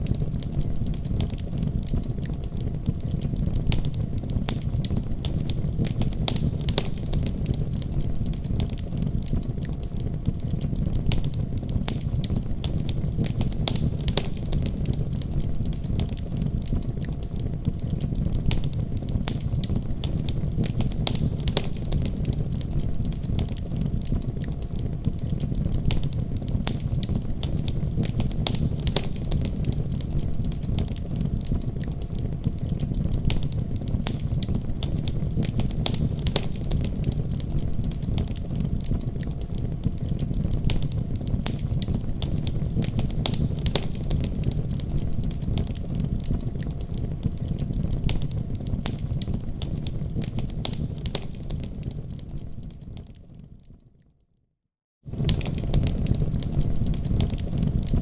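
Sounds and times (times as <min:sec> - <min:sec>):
fire crackling and popping: 0:00.0 - 0:54.0, 0:55.0 - 0:58.0
low rumble of flames: 0:00.0 - 0:54.0, 0:55.0 - 0:58.0.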